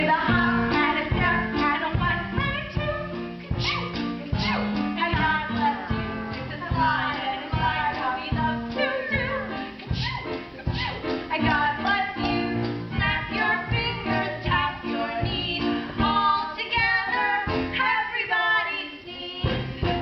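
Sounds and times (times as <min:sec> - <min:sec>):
singers with musical-theatre accompaniment: 0:00.0 - 0:20.0.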